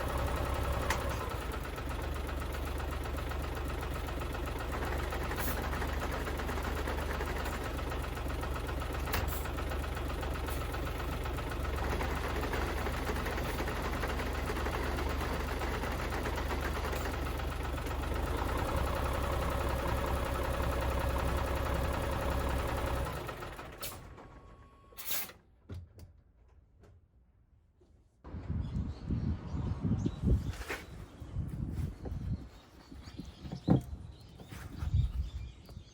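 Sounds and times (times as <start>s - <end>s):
diesel truck engine running: 0.0s - 24.9s.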